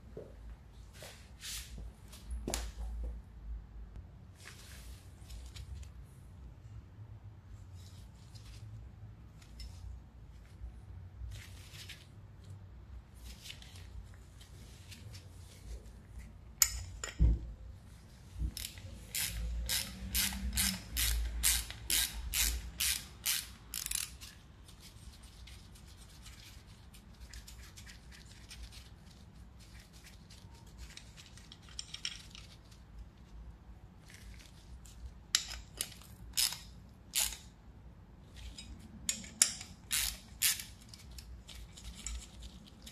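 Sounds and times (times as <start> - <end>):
ratchet wrench clicking: 18.6 - 24.4, 35.4 - 37.5, 38.5 - 42.3.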